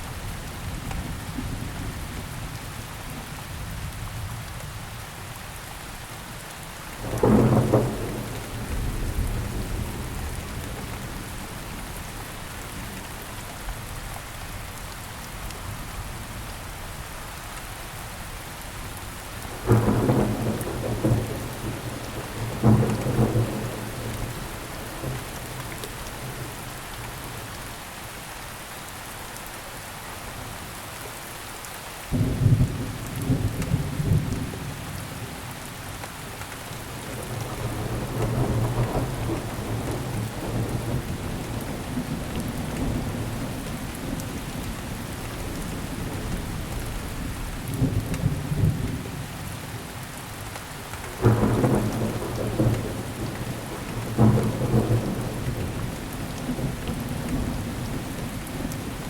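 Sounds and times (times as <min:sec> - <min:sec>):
steady rainfall: 0:00.0 - 0:59.0
thunder rumbling: 0:07.0 - 0:12.0, 0:19.6 - 0:26.6, 0:36.9 - 0:49.2, 0:51.1 - 0:59.0.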